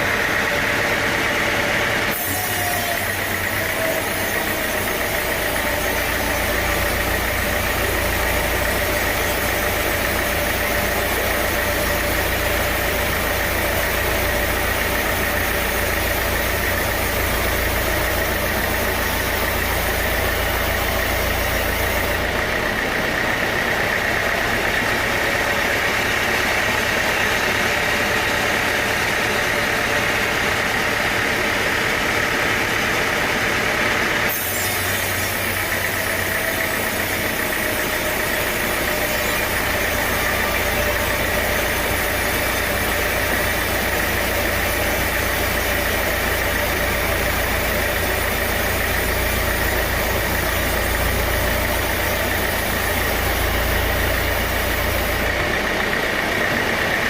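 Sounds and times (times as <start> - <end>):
engine-driven saw droning: 0.0 - 57.0.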